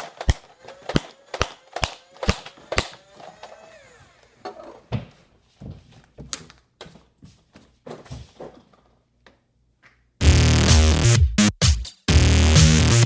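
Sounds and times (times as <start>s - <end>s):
electronic music beats: 10.2s - 13.0s.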